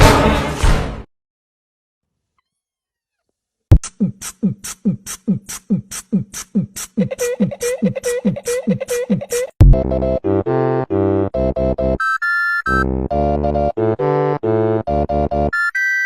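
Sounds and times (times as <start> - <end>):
beatbox low thumps: 3.7 - 9.8.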